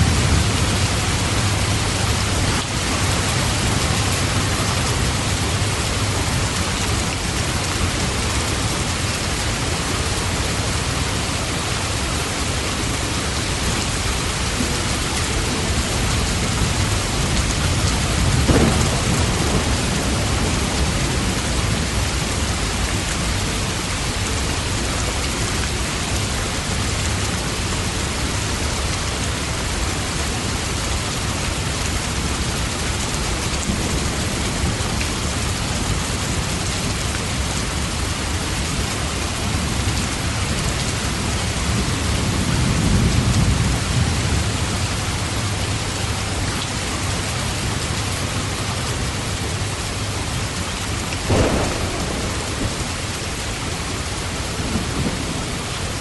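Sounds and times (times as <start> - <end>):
low rumbles of thunder: 0.0 - 24.8, 51.2 - 56.0
steady rain falling: 0.0 - 56.0.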